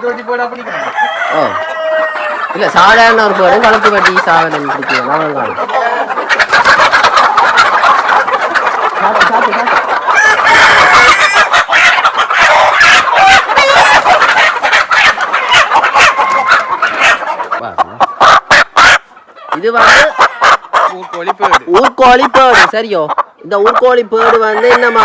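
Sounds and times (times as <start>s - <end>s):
roosters crowing: 0.0s - 22.8s, 23.9s - 25.0s
chickens clucking and squawking: 0.0s - 25.0s
wings flapping and scuffling: 3.0s - 17.6s.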